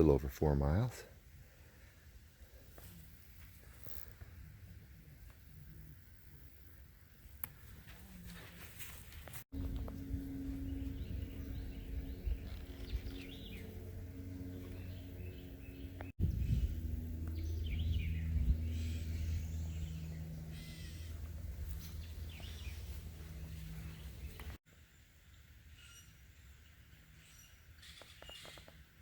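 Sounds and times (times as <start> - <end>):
steady low hum: 1.0 - 24.6
birds chirping and calling: 9.6 - 24.6.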